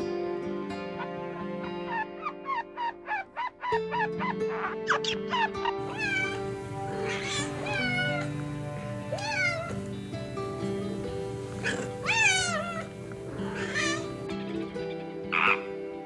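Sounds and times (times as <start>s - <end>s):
music of held notes: 5.5s - 16.0s
cat meowing: 5.8s - 10.0s, 11.4s - 14.2s.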